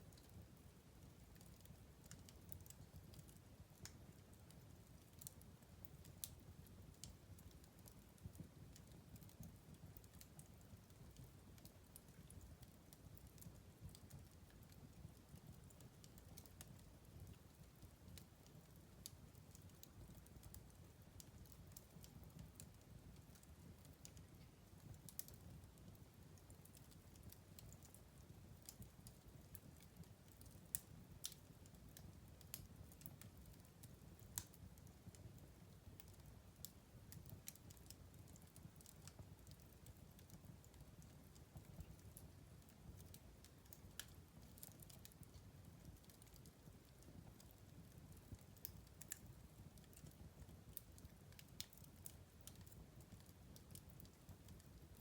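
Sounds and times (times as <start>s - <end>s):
fire crackling in fireplace: 0.0s - 55.0s.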